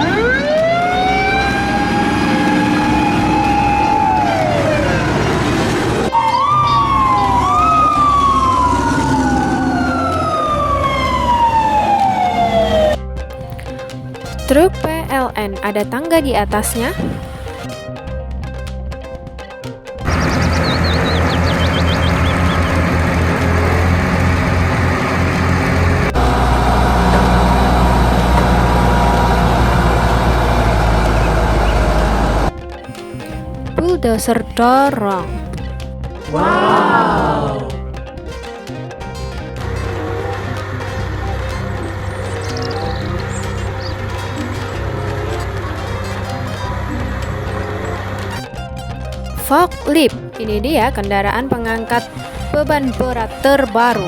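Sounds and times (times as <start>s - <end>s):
deep smooth engine drone: 0.0s - 6.1s, 20.0s - 33.8s, 39.5s - 48.8s
fire truck siren wailing: 0.0s - 13.0s, 20.0s - 33.3s, 36.3s - 37.8s.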